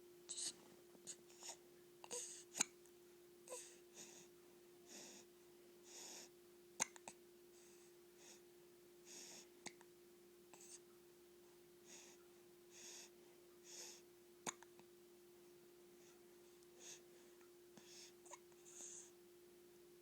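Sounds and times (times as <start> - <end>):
baby hiccuping: 6.8 - 7.1
baby soft breaths: 16.8 - 19.2.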